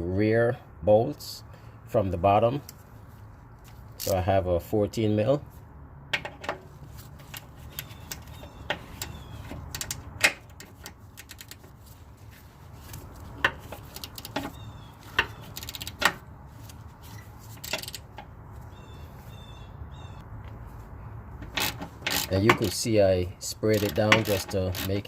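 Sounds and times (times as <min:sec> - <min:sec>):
ratchet clicking: 0:07.2 - 0:11.7, 0:12.9 - 0:16.2, 0:17.6 - 0:18.2, 0:21.5 - 0:22.8, 0:23.6 - 0:25.0.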